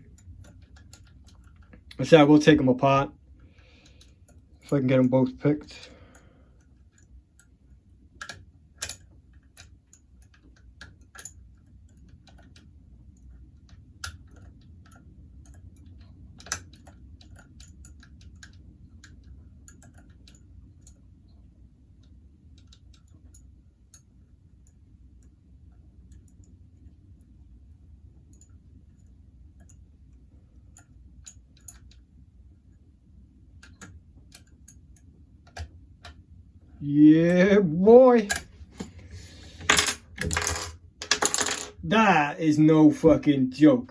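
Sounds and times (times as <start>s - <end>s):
lock picks clicking in lock: 8.2s - 9.0s, 9.6s - 11.3s.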